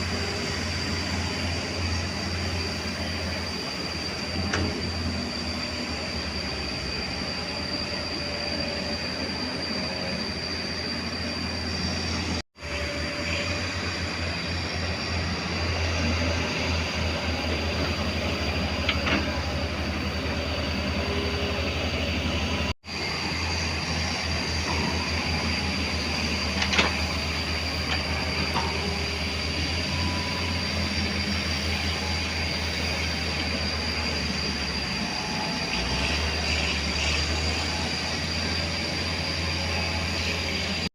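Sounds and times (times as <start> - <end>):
excavator diesel engine whining: 0.0 - 40.9.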